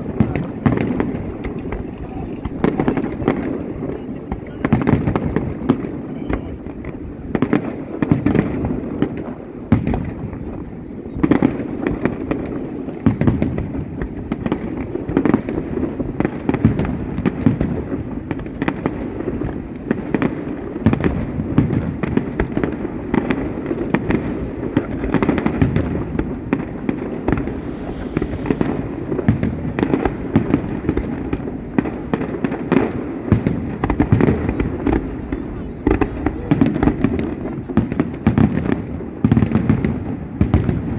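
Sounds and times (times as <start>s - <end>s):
fireworks bangs and crackles: 0.0s - 40.9s
high hiss: 27.3s - 29.0s.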